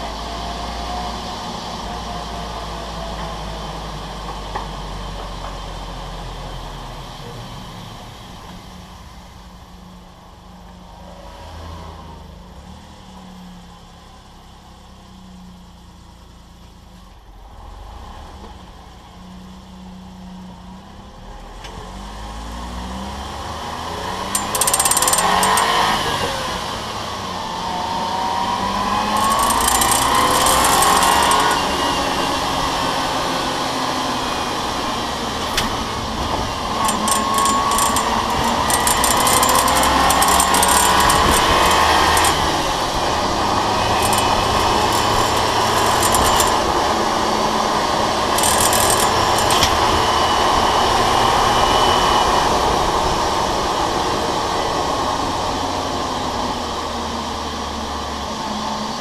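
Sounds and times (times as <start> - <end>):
car driveline whining: 23.9 - 51.4
harsh metallic noise: 29.2 - 31.8, 36.6 - 46.8, 48.4 - 49.8.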